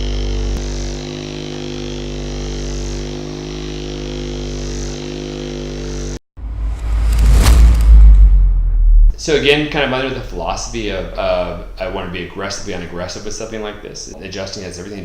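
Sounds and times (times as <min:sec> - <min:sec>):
electric massager buzzing: 0:00.0 - 0:06.2
loud rough noise: 0:06.4 - 0:12.0.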